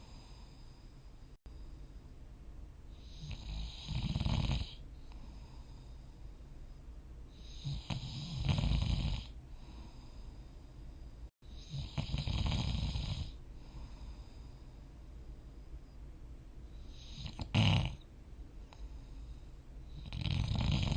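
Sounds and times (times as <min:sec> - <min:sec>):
person snoring: 0:03.0 - 0:05.6, 0:07.4 - 0:10.2, 0:11.6 - 0:14.2, 0:17.0 - 0:18.0, 0:20.0 - 0:20.9.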